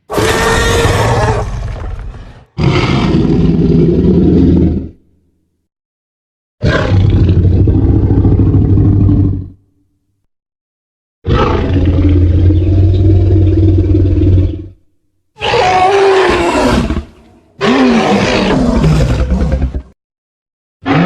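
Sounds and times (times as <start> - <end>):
deep rumbling dinosaur roar: 0.1 - 5.0, 6.6 - 9.6, 11.3 - 14.8, 15.4 - 20.0.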